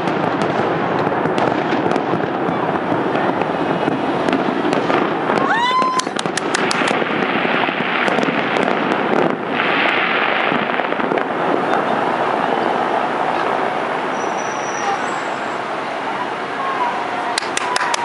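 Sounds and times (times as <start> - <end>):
fireworks crackling and banging: 0.0 - 18.0
firework rising whistle: 11.7 - 18.0.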